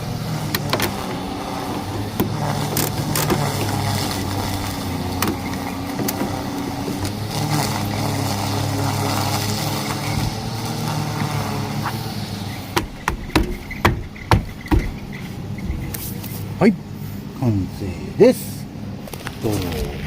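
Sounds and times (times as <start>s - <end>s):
car engine idling: 0.0s - 20.0s
sharp knocks: 12.7s - 15.9s.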